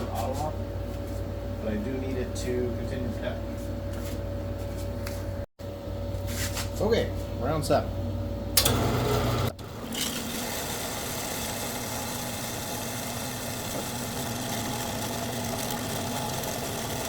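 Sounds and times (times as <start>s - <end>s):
power saw switch click: 8.6s - 9.0s
power saw cutting metal: 8.6s - 17.0s.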